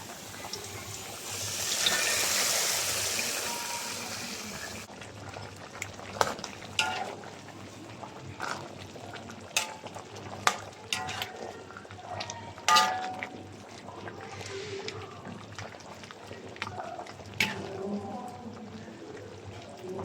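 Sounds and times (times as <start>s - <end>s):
metal utensil clinking against pot: 6.8s - 7.4s, 9.5s - 13.5s, 17.4s - 17.8s.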